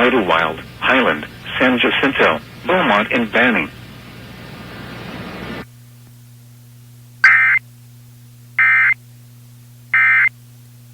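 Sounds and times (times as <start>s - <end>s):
static hiss: 0.0s - 5.7s
steady low hum: 0.0s - 10.9s
warbling digital data tones: 7.2s - 7.6s.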